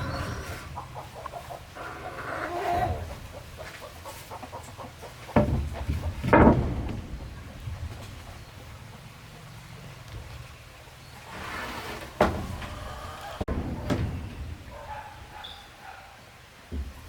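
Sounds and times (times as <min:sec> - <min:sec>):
chickens clucking: 0:00.0 - 0:17.0
loud knocks: 0:05.3 - 0:08.5, 0:13.4 - 0:15.3.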